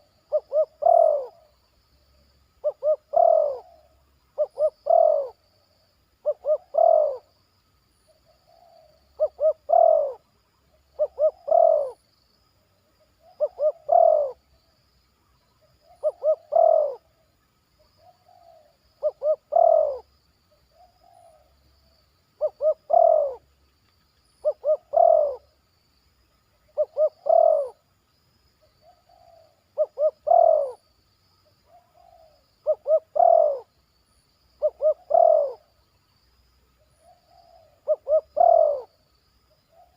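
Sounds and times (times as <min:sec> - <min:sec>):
dove cooing: 0:00.0 - 0:01.5, 0:02.6 - 0:05.4, 0:06.2 - 0:07.3, 0:08.4 - 0:10.3, 0:11.0 - 0:12.0, 0:13.2 - 0:14.4, 0:15.8 - 0:17.2, 0:18.0 - 0:20.1, 0:22.4 - 0:23.5, 0:24.4 - 0:25.5, 0:26.6 - 0:27.8, 0:28.8 - 0:30.8, 0:31.7 - 0:33.7, 0:34.6 - 0:35.7, 0:37.0 - 0:39.0.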